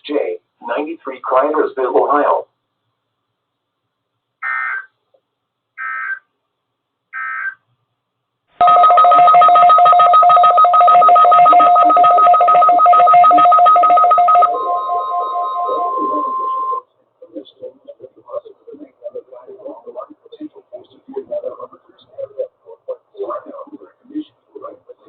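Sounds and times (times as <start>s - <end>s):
fluttering electronic alert tone: 8.6s - 16.8s.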